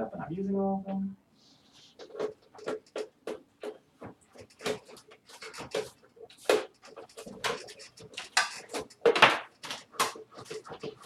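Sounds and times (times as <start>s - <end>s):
computer parts clicking and scraping: 2.0s - 11.0s.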